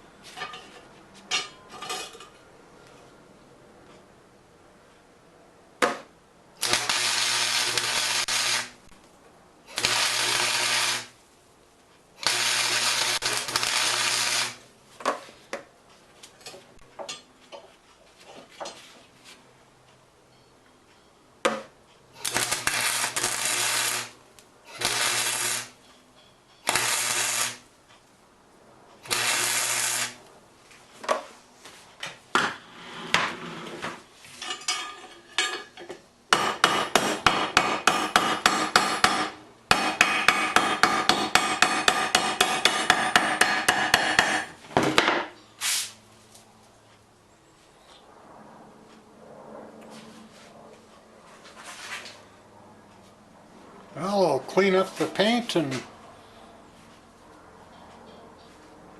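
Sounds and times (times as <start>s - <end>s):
low electrical hum: 0.0s - 58.9s
arc welder crackling hiss: 6.6s - 8.9s, 9.7s - 11.2s, 12.2s - 14.6s, 22.2s - 25.8s, 26.6s - 27.7s, 29.0s - 30.3s, 45.6s - 46.0s.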